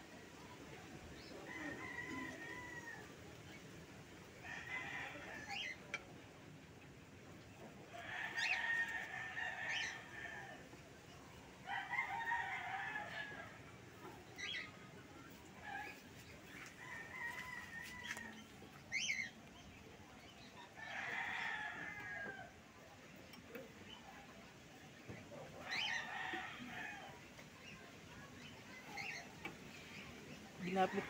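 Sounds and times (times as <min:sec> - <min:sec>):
rooster crowing: 0:16.8 - 0:18.4.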